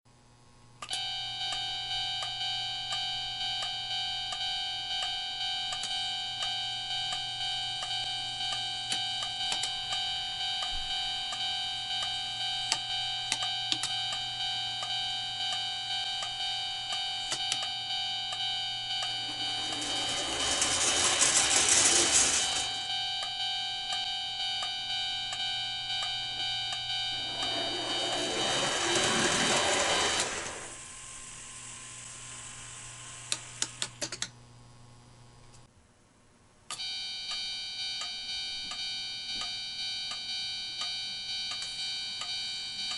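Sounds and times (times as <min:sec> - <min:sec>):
electronic crossing bell ringing: 0:00.9 - 0:30.8.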